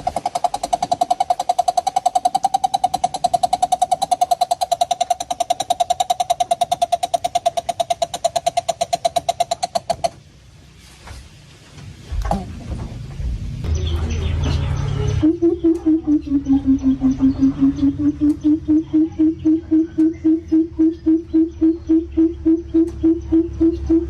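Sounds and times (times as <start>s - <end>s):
bird rapid hooting call: 0.0s - 10.2s, 15.2s - 24.0s.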